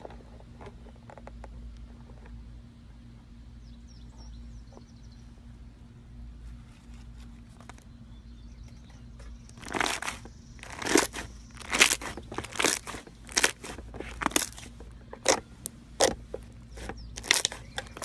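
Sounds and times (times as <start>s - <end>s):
faint low hum: 0.0s - 18.0s
slime crackling when squeezed: 9.6s - 15.4s, 16.8s - 18.0s.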